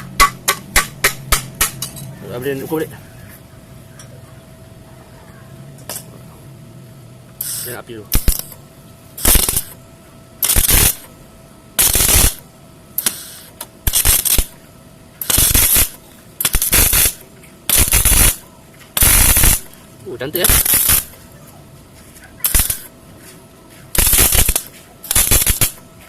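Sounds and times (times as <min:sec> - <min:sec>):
arc welder crackling: 0:00.0 - 0:02.9, 0:07.4 - 0:21.3, 0:22.3 - 0:23.3, 0:23.9 - 0:26.0.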